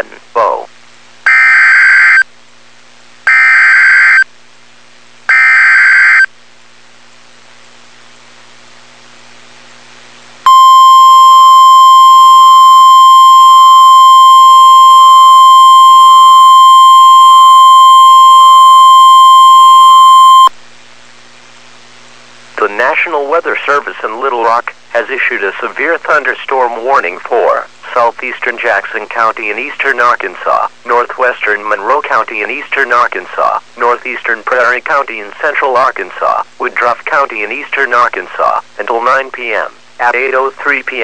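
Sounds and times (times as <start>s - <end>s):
steady loud warning tone: 10.5s - 20.5s.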